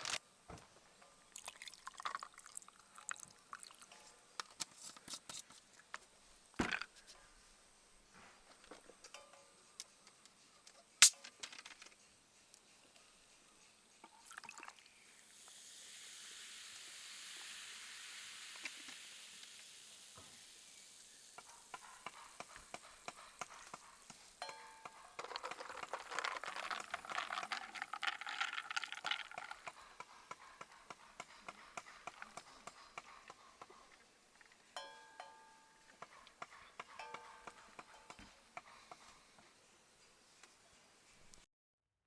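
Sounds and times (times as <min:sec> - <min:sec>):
oil crackling and spitting: 0:14.3 - 0:24.4, 0:25.2 - 0:30.4
food sizzling in a pan: 0:14.9 - 0:24.6.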